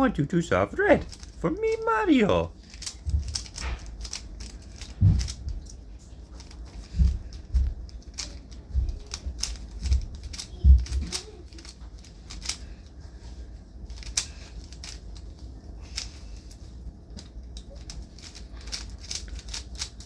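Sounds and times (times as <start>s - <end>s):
puzzle cube clicking: 1.0s - 5.5s, 9.0s - 12.6s, 13.9s - 15.3s, 17.2s - 20.0s.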